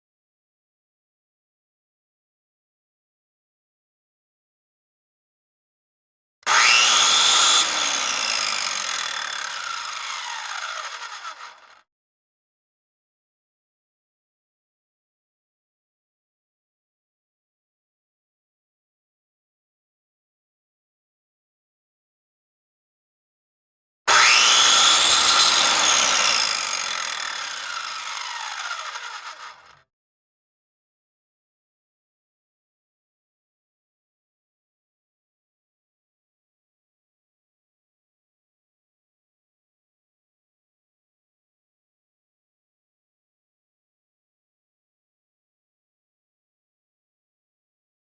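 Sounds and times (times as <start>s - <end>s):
circular saw motor whine: 6.5s - 11.8s, 24.1s - 29.7s.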